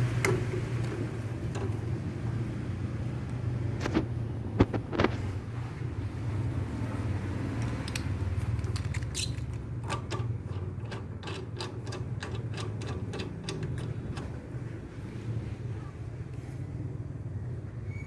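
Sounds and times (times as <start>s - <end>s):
welding machine electrical hum: 0.0s - 5.2s.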